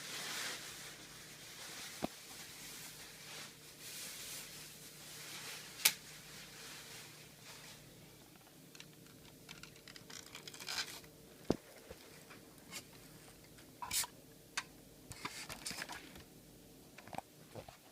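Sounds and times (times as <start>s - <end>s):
scratchy rustles: 0.0s - 7.9s
faint steady hum: 0.0s - 17.9s
plastic parts clicking: 8.7s - 11.1s.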